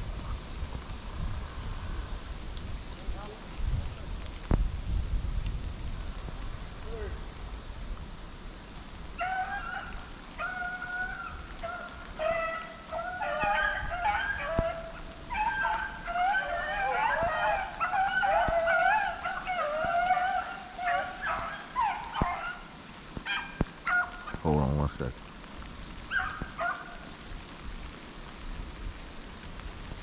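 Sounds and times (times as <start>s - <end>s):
hounds baying: 9.2s - 24.5s, 26.1s - 27.1s.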